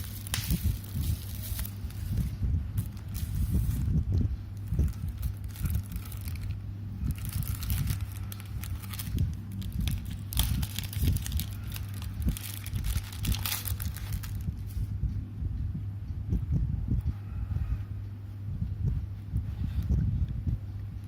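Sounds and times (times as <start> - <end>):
packaging crinkling and tearing: 0.0 - 3.9, 4.7 - 14.8.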